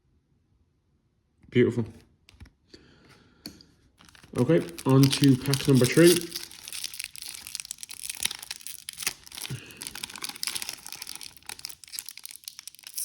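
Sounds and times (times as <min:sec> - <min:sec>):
wrapper crinkling and tearing: 0:04.0 - 0:13.0.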